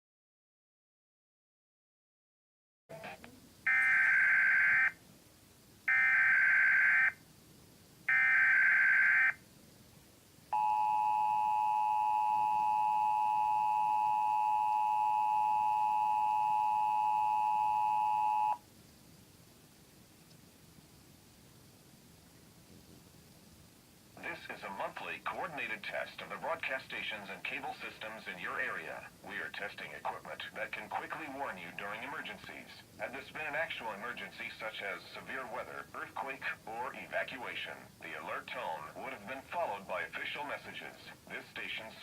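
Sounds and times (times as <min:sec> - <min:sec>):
two-tone attention signal: 0:10.6 - 0:18.6.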